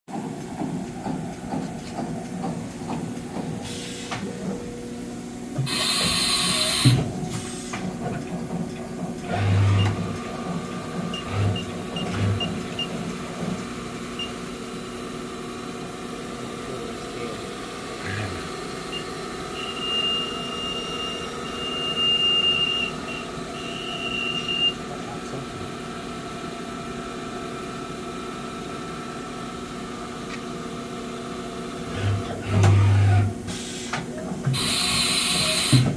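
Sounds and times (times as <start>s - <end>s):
machine hum: 0.2s - 21.7s.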